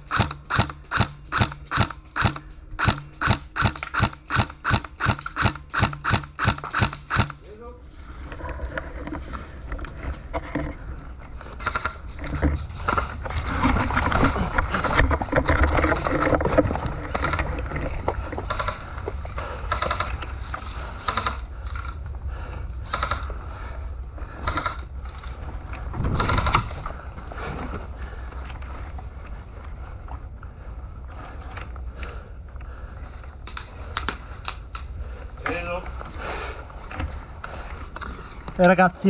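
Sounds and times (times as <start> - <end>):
sharp clicks and knocks: 0.0 - 7.6, 19.7 - 20.3.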